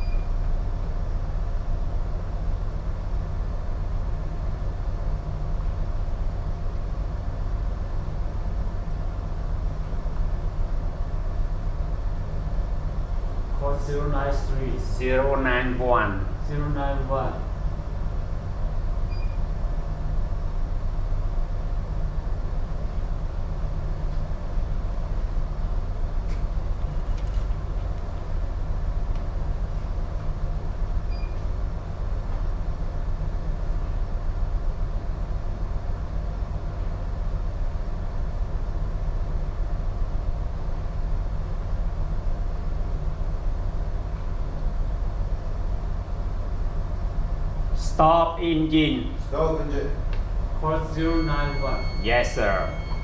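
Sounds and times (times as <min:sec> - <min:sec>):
faint short beep: 0:00.0 - 0:00.4, 0:19.1 - 0:19.4, 0:50.7 - 0:53.0
ship engine drone: 0:00.0 - 0:53.0.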